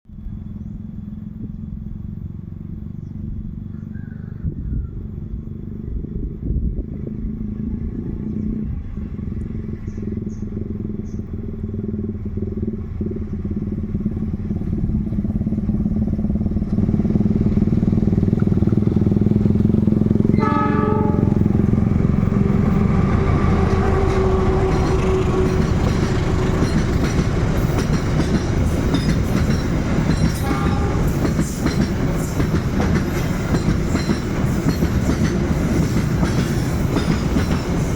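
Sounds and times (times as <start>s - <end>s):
freight train rumbling past: 0.2s - 37.9s
train horn blast: 20.2s - 26.6s, 30.4s - 31.6s.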